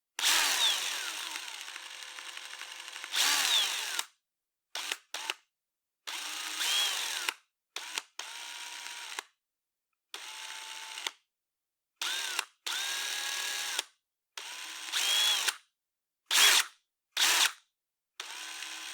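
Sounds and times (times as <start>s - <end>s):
electric power drill whining: 0.2s - 4.1s, 6.2s - 7.3s, 12.0s - 13.8s, 14.5s - 15.6s, 16.3s - 17.6s, 18.3s - 18.9s.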